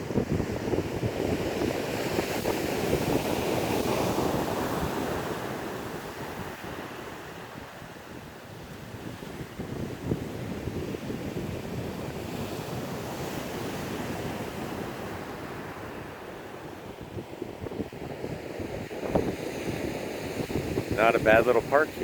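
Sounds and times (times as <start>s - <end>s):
wind buffeting microphone: 0.0s - 22.0s
ocean surf breaking: 18.2s - 22.0s.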